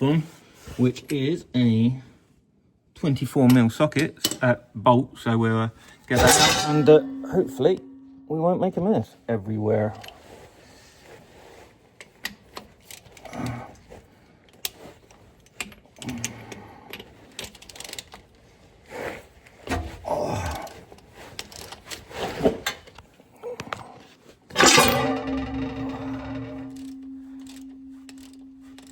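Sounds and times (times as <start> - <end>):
tools knocking and scraping metal: 6.1 - 8.3, 24.5 - 28.9.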